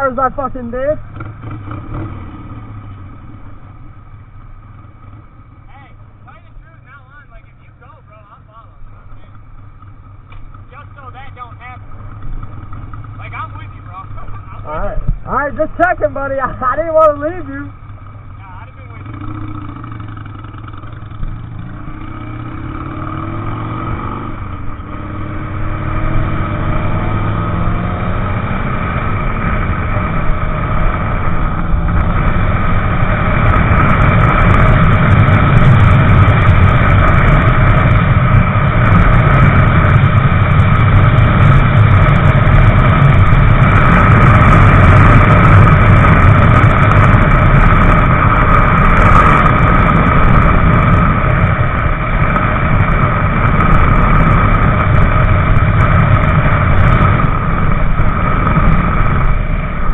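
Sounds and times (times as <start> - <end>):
motorcycle engine accelerating: 0.0 - 59.9
wind rush on microphone: 21.0 - 59.9.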